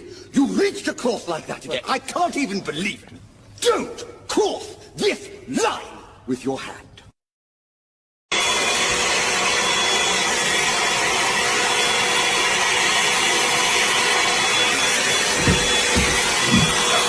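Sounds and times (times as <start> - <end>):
household appliance whooshing: 8.4 - 17.0
low thumps: 15.3 - 17.0.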